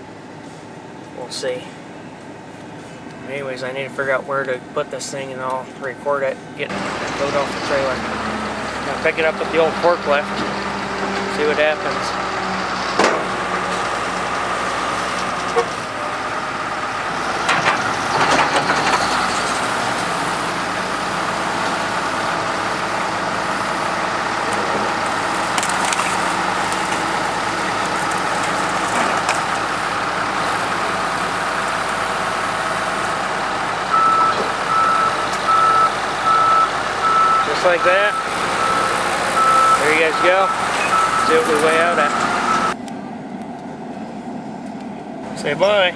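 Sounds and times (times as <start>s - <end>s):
forklift engine running: 6.4s - 45.9s
vehicle body creaking and cracking: 17.4s - 20.2s, 24.4s - 30.4s
reversing beeps: 33.9s - 38.8s, 39.4s - 42.8s.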